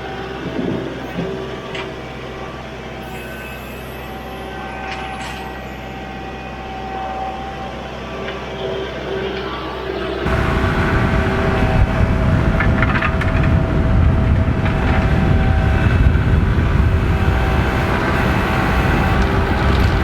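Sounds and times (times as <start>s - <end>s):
engine whine: 9.1s - 20.0s
tractor diesel engine running: 10.2s - 20.0s.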